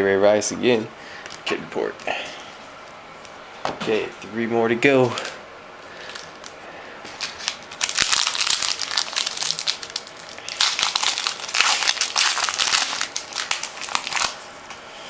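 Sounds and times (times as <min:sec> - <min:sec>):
foil wrapper crinkling and tearing: 0:06.0 - 0:14.4.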